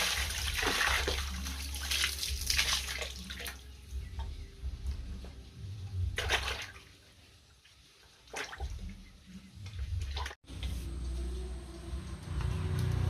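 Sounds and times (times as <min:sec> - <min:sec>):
water splashing and running: 0:00.0 - 0:03.6.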